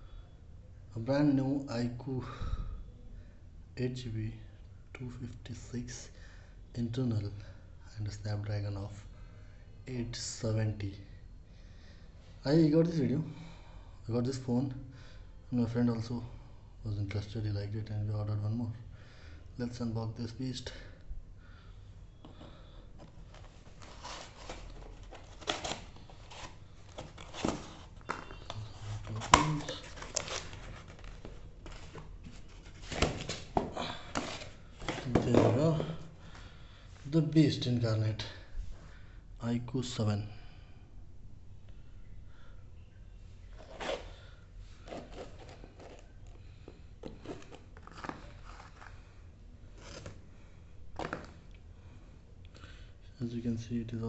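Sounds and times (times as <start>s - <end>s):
packaging rustling and tearing: 23.2s - 35.2s, 44.8s - 46.4s, 47.0s - 49.0s.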